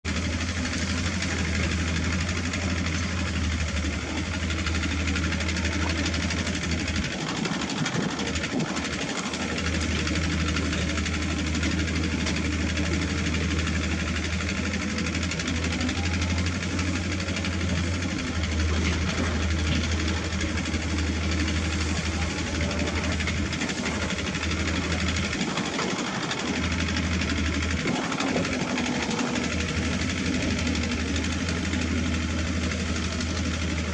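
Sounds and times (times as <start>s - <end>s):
diesel engines droning: 0.1s - 33.9s.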